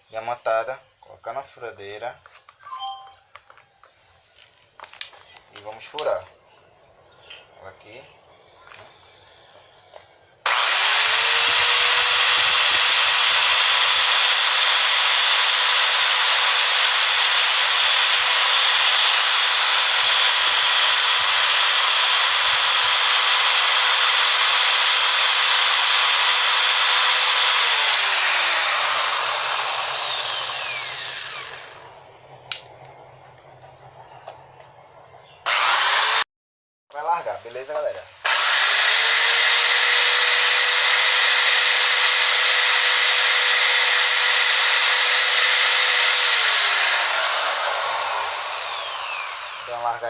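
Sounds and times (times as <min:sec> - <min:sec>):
electric drill grinding glass: 0:10.4 - 0:32.0, 0:35.4 - 0:36.3, 0:38.3 - 0:50.0.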